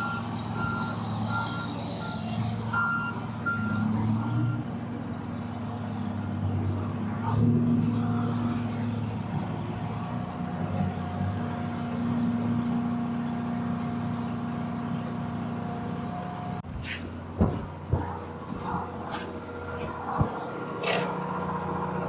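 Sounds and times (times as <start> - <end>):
reversing alarm beeping: 0.0 - 4.6
heavy engine running: 0.0 - 22.0.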